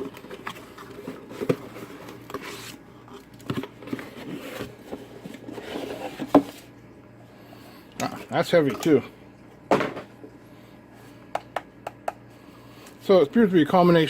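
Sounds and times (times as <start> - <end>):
packaging rustling and scraping: 0.0 - 6.7.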